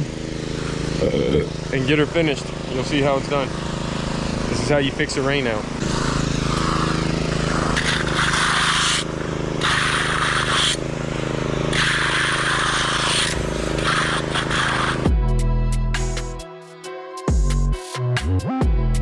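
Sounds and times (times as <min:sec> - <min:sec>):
water pump engine running: 0:00.0 - 0:15.1
rushing water hiss: 0:05.8 - 0:10.9, 0:11.7 - 0:15.0
music: 0:15.0 - 0:19.0.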